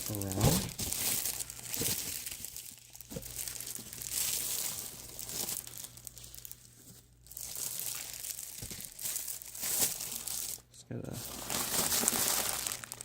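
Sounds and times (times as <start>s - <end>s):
plastic packaging crinkling: 0.0s - 13.0s.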